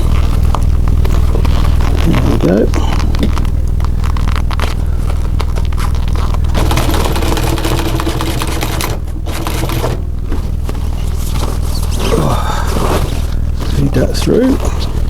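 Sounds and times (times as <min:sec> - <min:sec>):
electric sewing machine running: 0:06.5 - 0:10.3.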